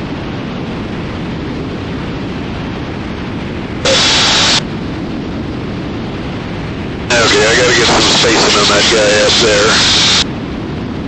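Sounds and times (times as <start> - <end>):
aircraft engine and airflow noise: 0.0 - 11.0
radio hiss burst: 3.8 - 4.6, 7.1 - 10.3.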